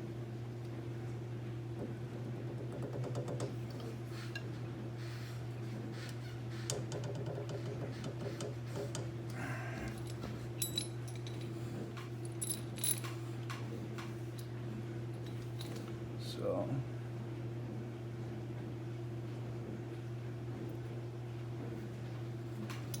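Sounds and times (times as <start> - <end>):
steady low hum: 7.9 - 23.0
hand tools clinking: 9.8 - 11.6, 12.3 - 13.2, 22.7 - 23.0.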